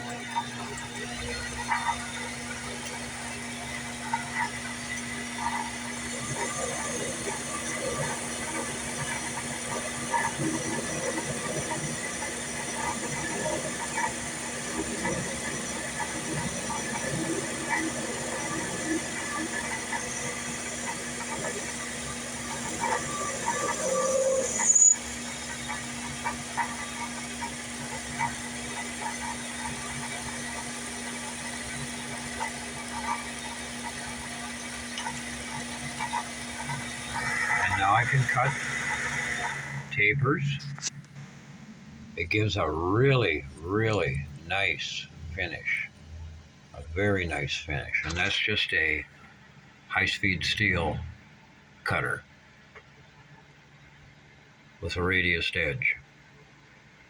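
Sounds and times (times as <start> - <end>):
metal lathe motor hum: 0.0 - 42.2.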